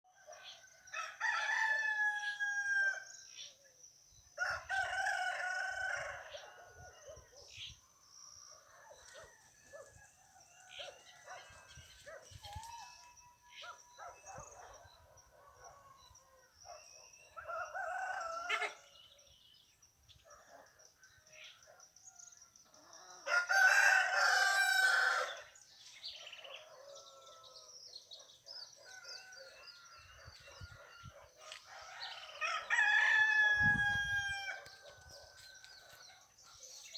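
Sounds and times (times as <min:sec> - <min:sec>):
roosters crowing: 0:00.8 - 0:03.1, 0:04.4 - 0:07.0, 0:17.4 - 0:19.0, 0:23.1 - 0:25.5, 0:28.9 - 0:35.7.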